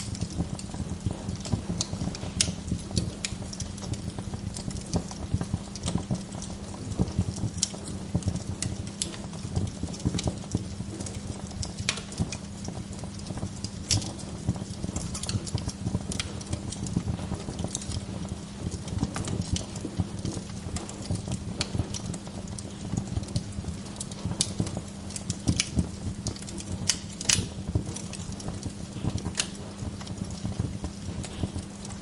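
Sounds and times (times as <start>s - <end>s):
wood fire crackling: 0.0s - 32.0s.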